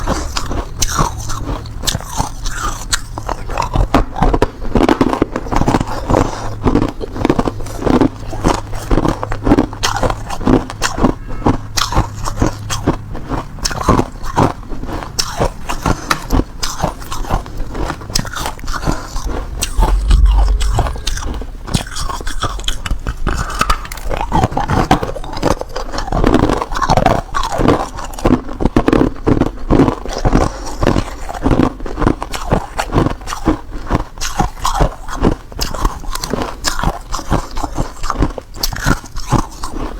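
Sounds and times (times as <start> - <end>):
ice crunching while chewed: 0.0 - 39.9
low bump: 19.2 - 23.9.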